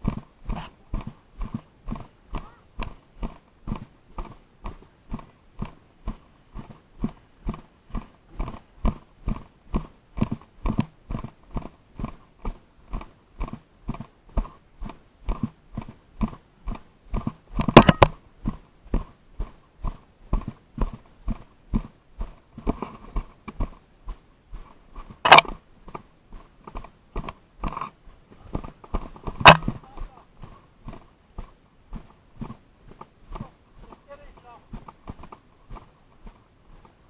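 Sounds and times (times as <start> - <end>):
footsteps walking briskly: 0.0 - 37.0
clatter of sharp clicks: 6.6 - 18.2, 25.0 - 30.1.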